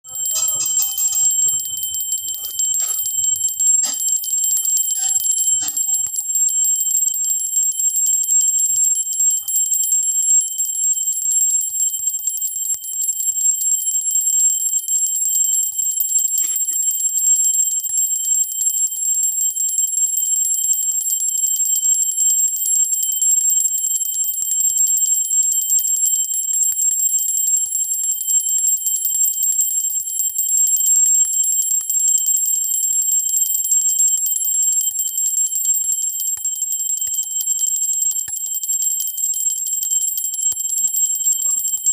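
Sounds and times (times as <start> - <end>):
temple bell ringing: 0.0 - 7.2, 39.8 - 41.9.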